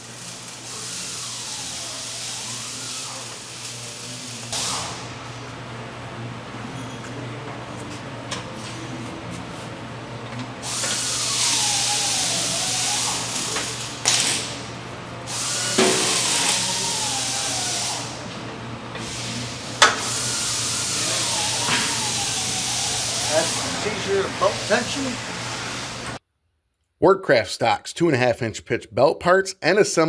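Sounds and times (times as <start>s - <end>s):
power wrench hissing and whining: 0.0s - 5.2s, 10.6s - 18.3s, 19.0s - 26.2s.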